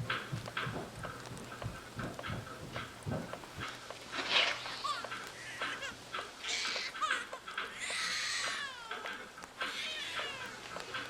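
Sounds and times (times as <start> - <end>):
animal crying: 4.7 - 11.0.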